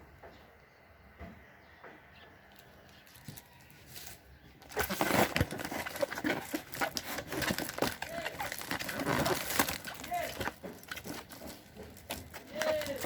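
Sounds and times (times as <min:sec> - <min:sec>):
plastic packaging crinkling: 0:03.0 - 0:13.0.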